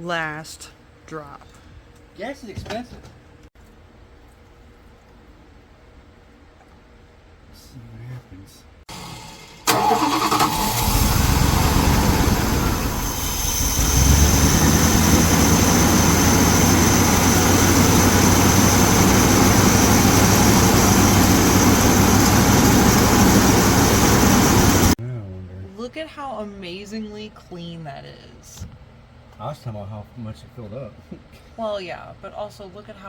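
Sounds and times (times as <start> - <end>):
truck engine starting and running: 8.9 - 25.0.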